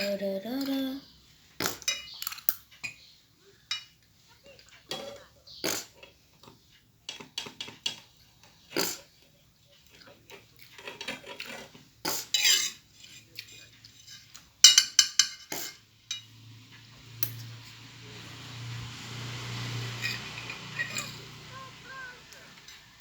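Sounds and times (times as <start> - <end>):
spoon and plate clattering: 1.8 - 3.0, 10.3 - 16.4, 19.9 - 21.5.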